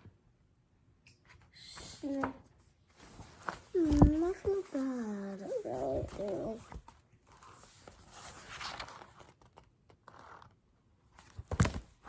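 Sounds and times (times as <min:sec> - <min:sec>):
paper pages rustling and turning: 0:02.9 - 0:12.0.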